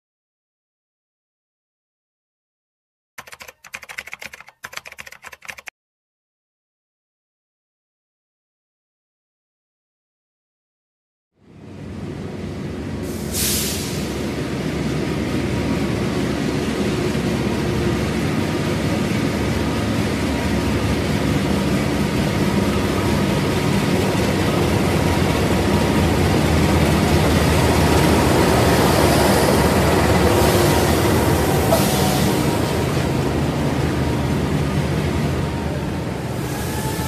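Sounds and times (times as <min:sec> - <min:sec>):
diesel locomotive engine drone: 0:11.4 - 0:37.0
train wheel rumble: 0:11.5 - 0:37.0
brief hiss: 0:13.1 - 0:14.2.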